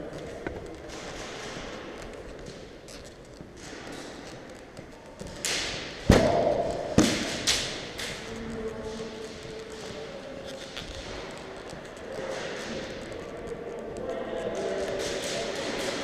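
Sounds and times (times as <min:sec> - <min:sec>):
sharp knocks and cracks: 0:00.4 - 0:13.2.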